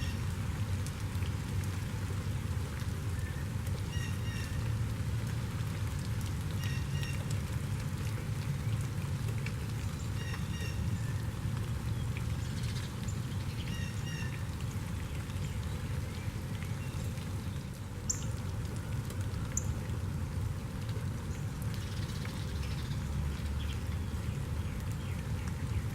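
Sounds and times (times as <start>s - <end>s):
constant low rumble: 0.0s - 25.9s
steady rain pattering: 0.0s - 25.9s.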